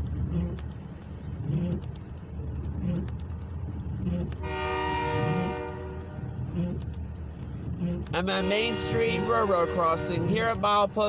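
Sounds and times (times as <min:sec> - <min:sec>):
low rumble of locomotives: 0:00.0 - 0:11.0
locomotive horn blast: 0:04.2 - 0:06.8, 0:08.2 - 0:10.8.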